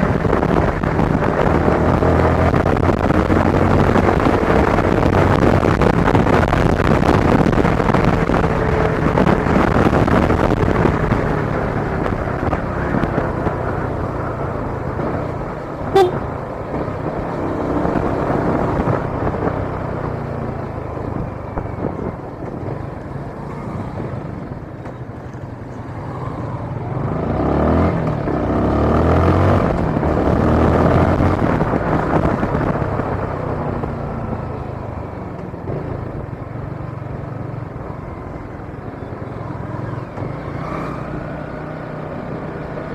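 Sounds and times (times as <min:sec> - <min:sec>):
road traffic passing: 0:00.0 - 0:42.9
loud vehicle passing: 0:25.9 - 0:31.7.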